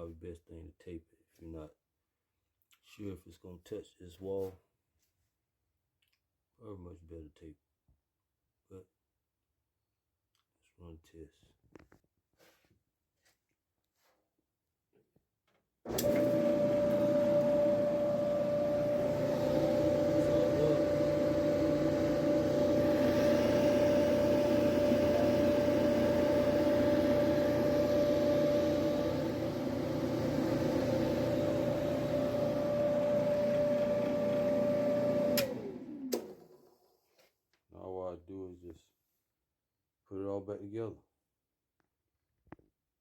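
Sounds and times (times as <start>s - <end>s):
clothes dryer running: 15.9s - 36.7s.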